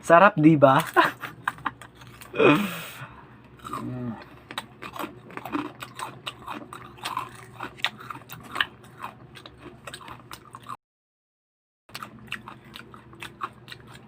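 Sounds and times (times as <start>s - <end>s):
crunchy food being chewed: 0.8s - 2.4s, 3.4s - 10.8s, 11.9s - 14.0s.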